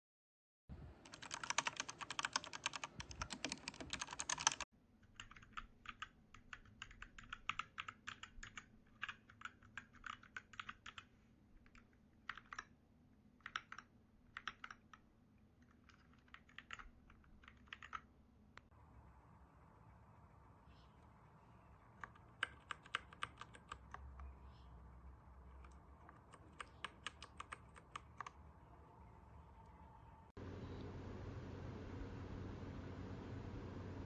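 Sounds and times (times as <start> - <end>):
mechanical keyboard typing: 1.0 - 12.7, 13.4 - 15.0, 15.6 - 18.1, 21.8 - 24.4, 25.3 - 28.4.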